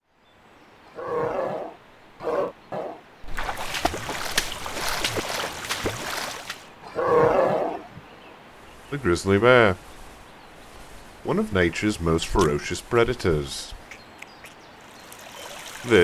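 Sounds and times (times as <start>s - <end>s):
bear roaring and growling: 6.8s - 8.0s.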